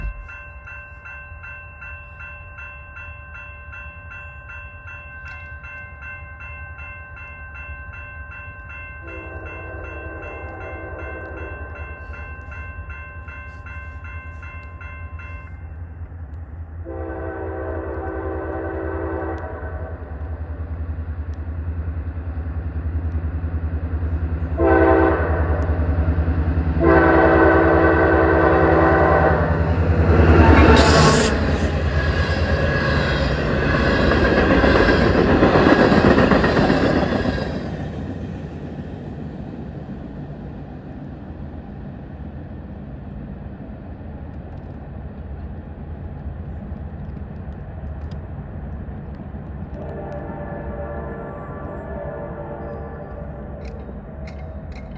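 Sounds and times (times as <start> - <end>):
crossing signal bell ringing: 0.0 - 16.1
locomotive horn blasts: 9.0 - 11.6, 16.9 - 20.0, 24.6 - 25.8, 26.8 - 31.6, 49.8 - 53.4.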